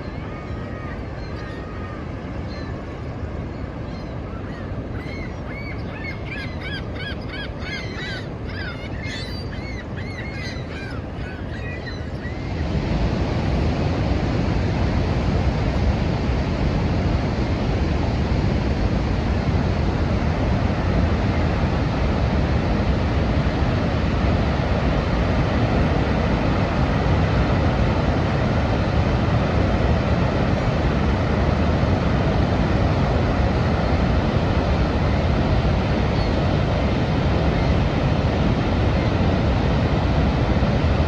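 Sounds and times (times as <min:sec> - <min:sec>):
birds calling: 0:03.8 - 0:12.6.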